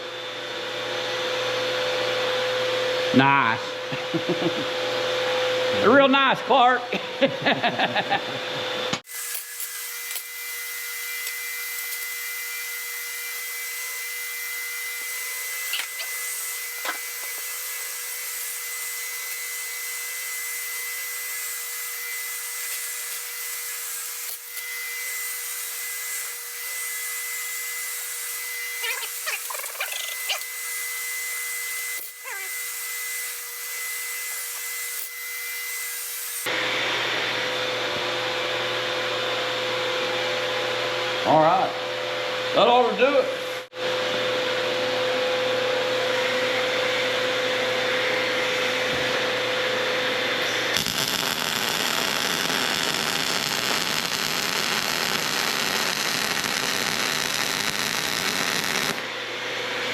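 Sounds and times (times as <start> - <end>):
welder or grinder hissing: 9.1 - 36.5, 50.4 - 59.0.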